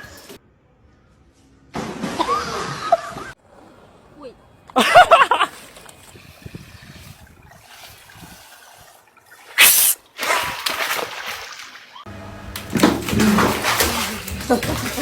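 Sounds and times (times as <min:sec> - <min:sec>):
loud water splash: 0:09.4 - 0:11.8.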